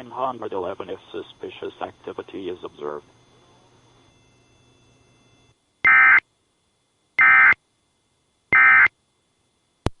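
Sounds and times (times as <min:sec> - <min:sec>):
buzzy digital data tone bursts: 0:00.2 - 0:06.2, 0:07.2 - 0:07.6, 0:08.5 - 0:08.9.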